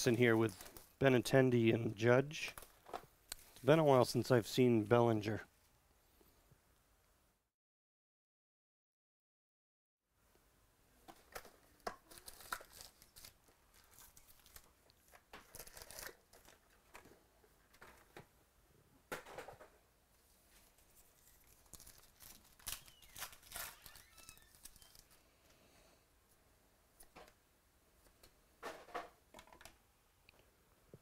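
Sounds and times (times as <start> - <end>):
card wrappers tearing and crinkling: 11.3 - 16.8, 21.2 - 25.2.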